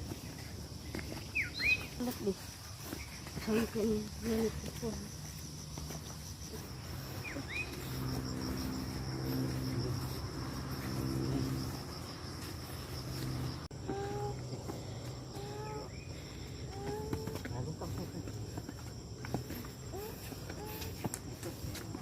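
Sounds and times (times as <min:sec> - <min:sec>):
insects trilling: 0:00.0 - 0:22.0
short calls: 0:01.2 - 0:02.1.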